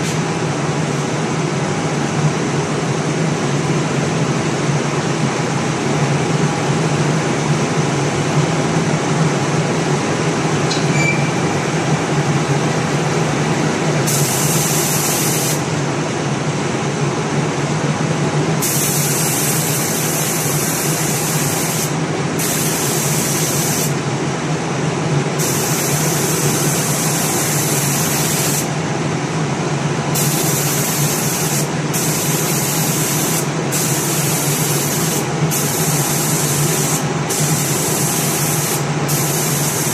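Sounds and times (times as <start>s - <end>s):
spray-painting machine humming: 14.0s - 15.7s, 18.6s - 24.0s, 25.4s - 28.8s, 30.1s - 39.9s
spray guns hissing: 30.2s - 39.9s.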